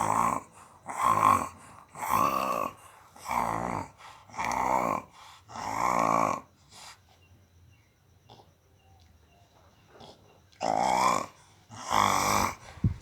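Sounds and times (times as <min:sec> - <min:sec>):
child snoring: 0:10.8 - 0:13.0.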